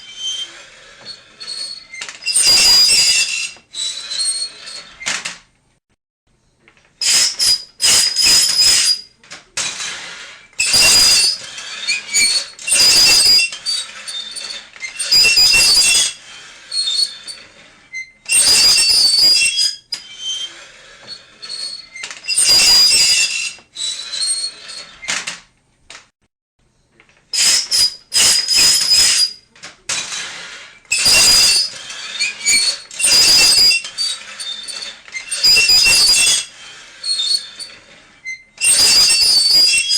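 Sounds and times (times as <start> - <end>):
high-pitched squealing scrapes: 0.0 - 5.1, 7.0 - 25.2, 27.3 - 39.9.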